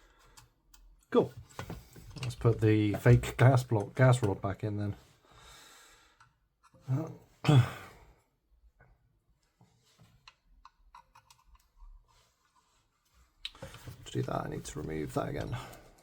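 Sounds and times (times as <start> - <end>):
small parts clicking and tapping: 10.2 - 12.1.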